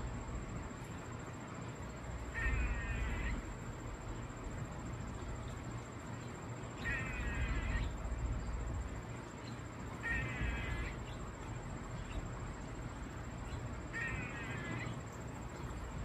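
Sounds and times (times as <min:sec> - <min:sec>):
squirrel harsh call: 0:02.3 - 0:03.5, 0:06.8 - 0:08.0, 0:10.0 - 0:11.2, 0:13.9 - 0:15.0.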